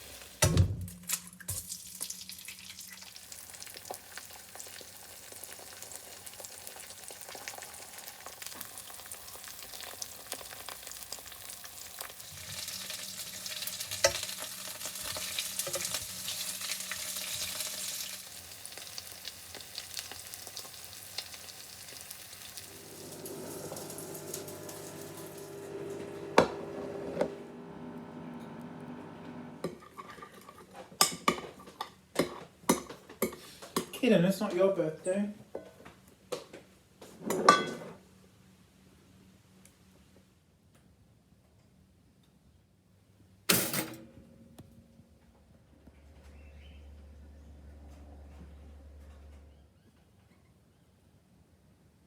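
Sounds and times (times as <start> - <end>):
food sizzling in a pan: 0.0 - 0.4, 1.5 - 29.6
steady low hum: 22.7 - 29.6.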